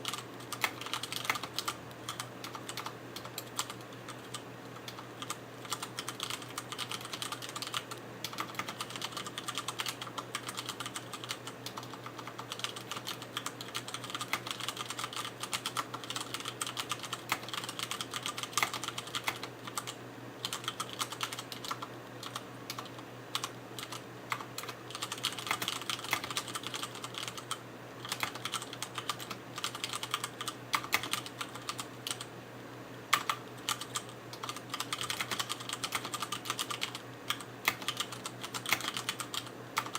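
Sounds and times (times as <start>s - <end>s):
mechanical keyboard typing: 0.0s - 32.3s, 33.1s - 39.9s.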